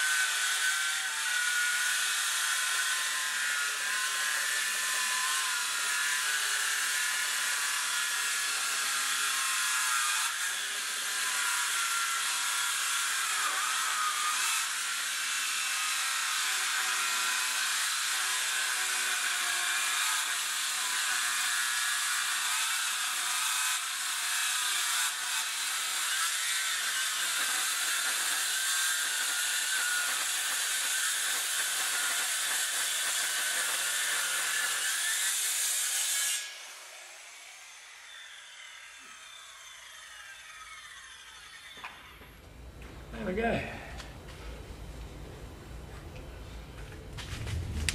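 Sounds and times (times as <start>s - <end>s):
circular saw cutting wood: 0.0s - 42.4s
saw blade winding down: 17.4s - 42.2s.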